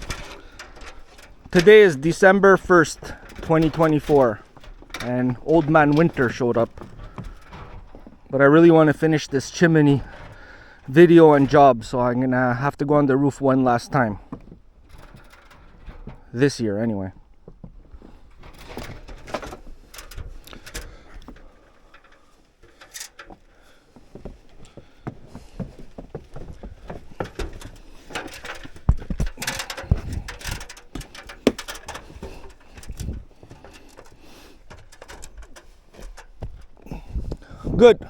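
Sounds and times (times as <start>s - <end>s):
knocks and scrapes from handling: 17.5s - 37.6s.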